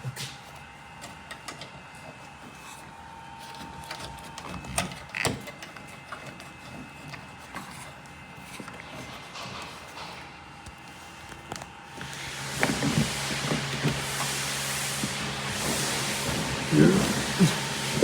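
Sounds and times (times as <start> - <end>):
wires rubbing through rubber grommet: 11.9 - 18.0.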